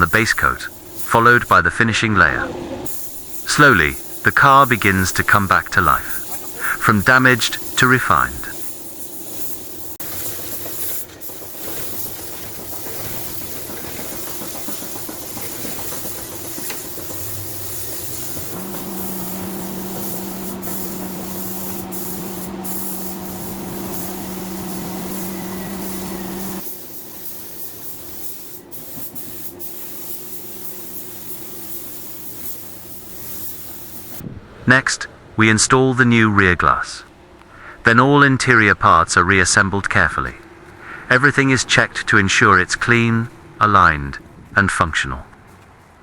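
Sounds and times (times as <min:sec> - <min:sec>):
paint spray gun hissing: 0:00.0 - 0:01.5, 0:02.8 - 0:34.2
steady low hum: 0:00.0 - 0:46.0.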